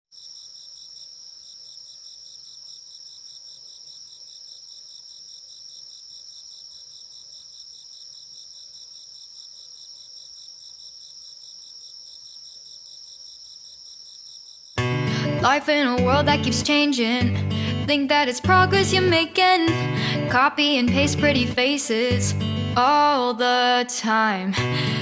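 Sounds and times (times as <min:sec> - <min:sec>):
crickets trilling: 0:00.1 - 0:14.8.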